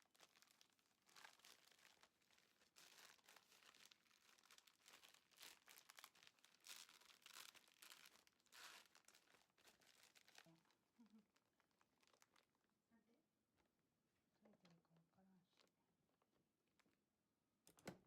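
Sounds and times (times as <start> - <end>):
plastic bag crinkling: 0.0 - 12.7.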